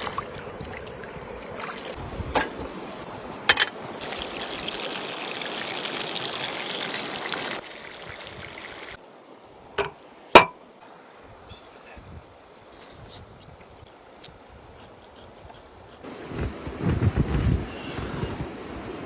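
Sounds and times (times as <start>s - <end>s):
flowing water rushing: 0.0s - 11.2s.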